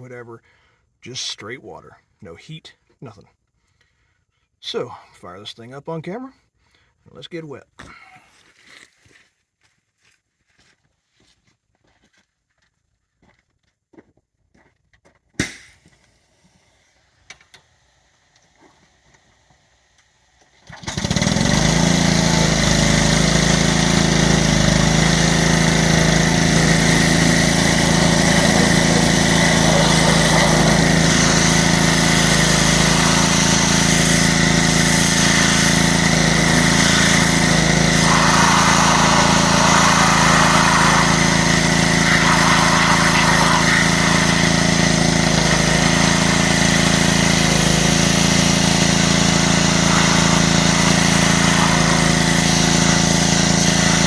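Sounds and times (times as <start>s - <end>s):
pressure washer engine running: 20.7s - 54.0s.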